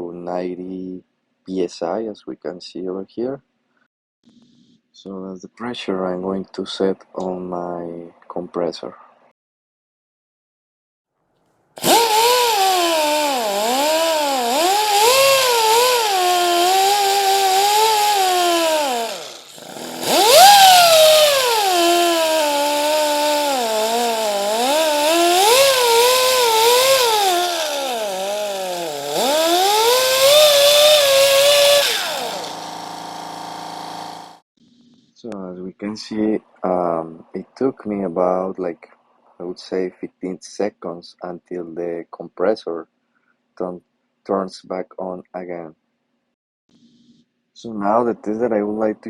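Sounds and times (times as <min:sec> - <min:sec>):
pneumatic grinder whine: 0:11.8 - 0:34.4.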